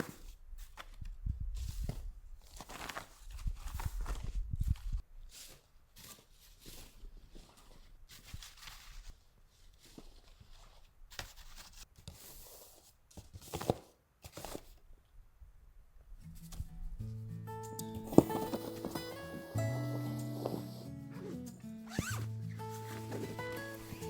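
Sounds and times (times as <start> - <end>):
footsteps crunching through snow: 21.9 - 24.0.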